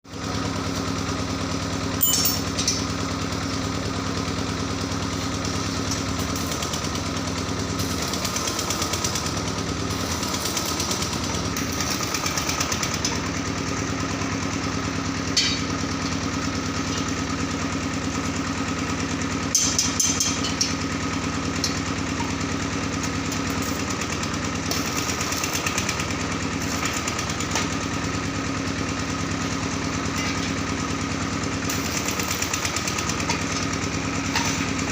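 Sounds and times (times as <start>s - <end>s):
sharp metallic knocks: 2.0s - 2.8s
machine motor droning: 5.7s - 13.0s.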